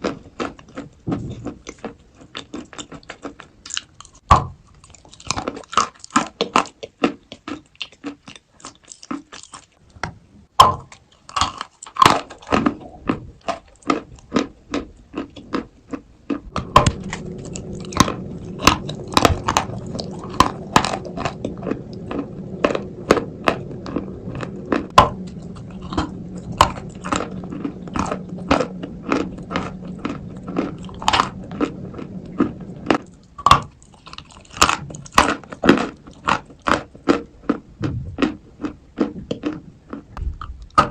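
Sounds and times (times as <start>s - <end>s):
low steady hum: 9.7s - 40.9s.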